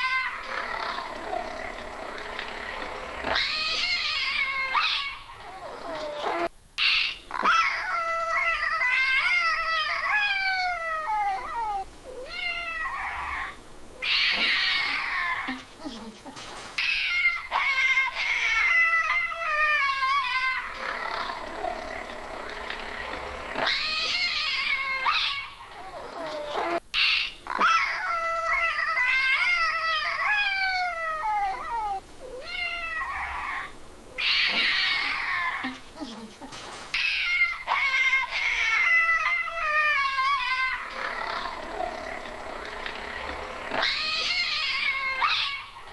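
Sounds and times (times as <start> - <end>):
cat yowling: 3.3 - 15.6, 23.6 - 35.8, 37.0 - 42.3, 43.1 - 45.9.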